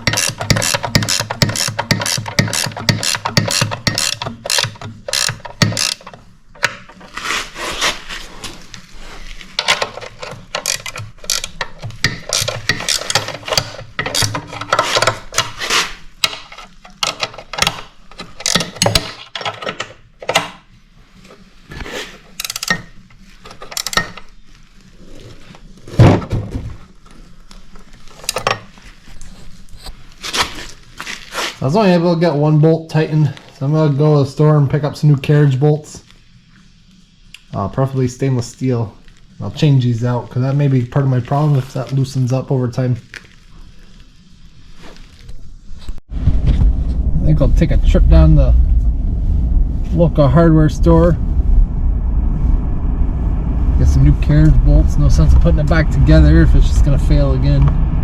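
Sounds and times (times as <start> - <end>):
ratchet wrench clicking: 0.0 - 6.1, 10.5 - 14.4, 22.4 - 22.8.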